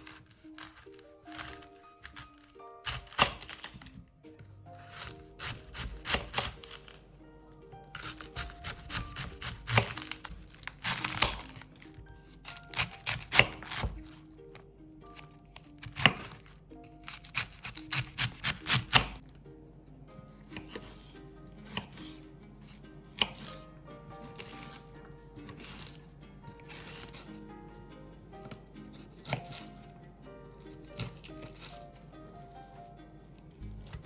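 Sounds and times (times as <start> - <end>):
soft background music: 0.0 - 34.0
knife chopping on cutting board: 2.9 - 3.8, 4.8 - 6.8, 8.0 - 11.6, 12.7 - 14.1.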